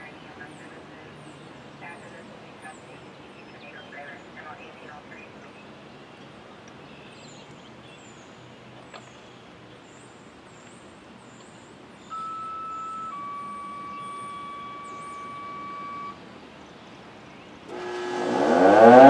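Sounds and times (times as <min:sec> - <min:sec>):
faint outdoor background: 0:00.0 - 0:19.0
bird chirping: 0:05.2 - 0:17.8
two-tone siren tones: 0:12.1 - 0:16.2, 0:17.7 - 0:19.0.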